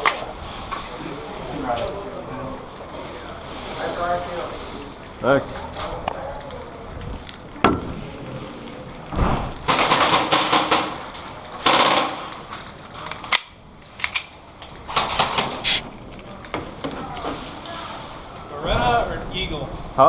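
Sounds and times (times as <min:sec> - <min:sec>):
airsoft guns firing: 0:09.7 - 0:12.5, 0:14.9 - 0:15.8.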